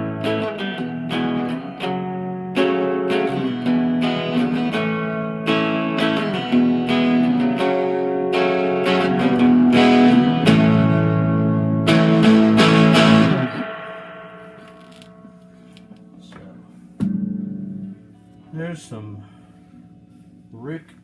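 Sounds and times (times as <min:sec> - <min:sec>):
electric guitar strummed chords: 0:00.0 - 0:19.0.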